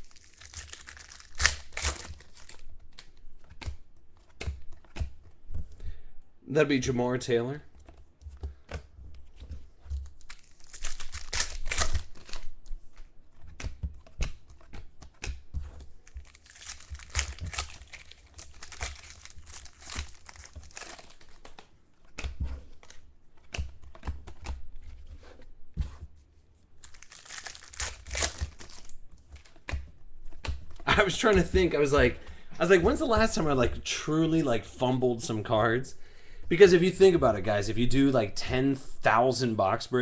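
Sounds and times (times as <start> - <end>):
wrappers torn and crinkled: 0.0 - 3.1, 10.2 - 12.6, 16.0 - 21.6, 26.8 - 29.6.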